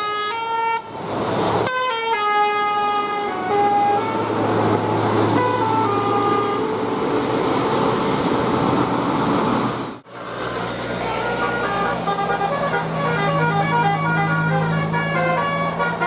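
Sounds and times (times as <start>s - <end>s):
multi-tone air horn melody: 0.0s - 1.0s, 1.6s - 8.2s, 11.0s - 16.0s
bus engine running: 0.0s - 16.0s.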